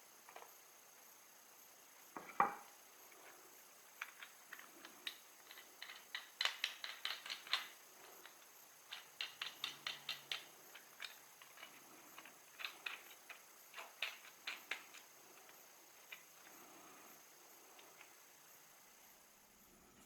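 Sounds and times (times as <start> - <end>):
small hard parts clicking: 3.2 - 18.2.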